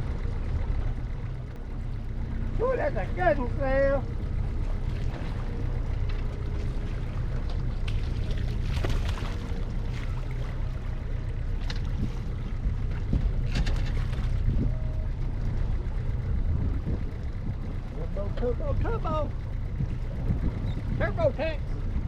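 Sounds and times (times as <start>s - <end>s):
boat rumbling: 0.0s - 22.0s
short knocks and rattles: 12.8s - 14.5s.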